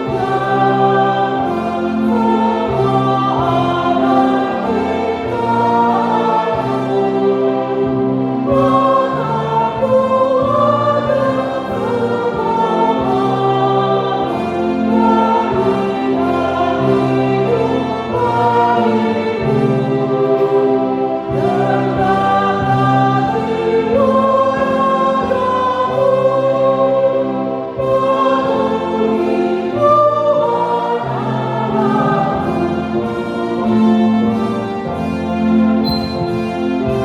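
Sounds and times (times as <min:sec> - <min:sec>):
choir singing a hymn: 0:00.0 - 0:37.0.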